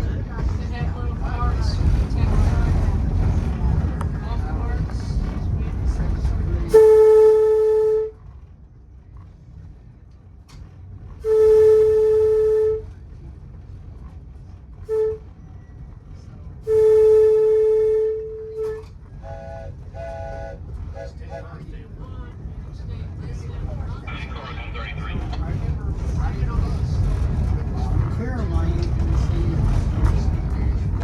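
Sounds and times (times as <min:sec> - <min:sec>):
locomotive air horn: 0:06.7 - 0:08.2, 0:11.2 - 0:13.0, 0:14.8 - 0:15.3, 0:16.6 - 0:21.4.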